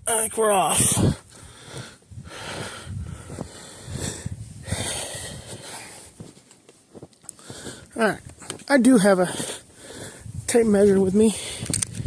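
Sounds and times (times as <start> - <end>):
person breathing hard: 0.9 - 6.2, 7.3 - 8.0, 9.2 - 10.4, 11.3 - 12.0
footsteps crunching in snow: 1.2 - 11.6.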